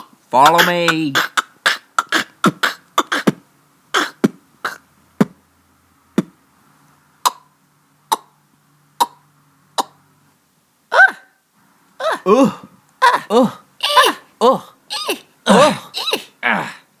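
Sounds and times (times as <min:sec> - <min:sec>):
child making mouth clicks: 0:00.0 - 0:03.4.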